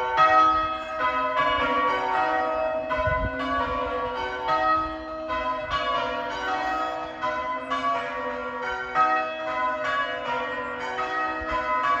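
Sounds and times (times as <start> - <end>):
church bells change ringing: 0.0 - 12.0.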